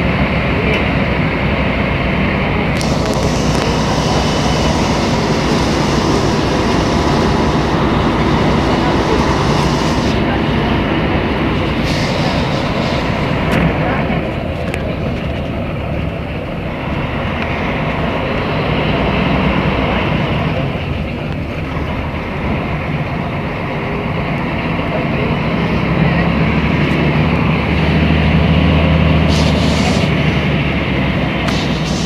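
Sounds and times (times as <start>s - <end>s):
bus diesel engine running: 0.0s - 32.0s
road noise: 0.0s - 32.0s.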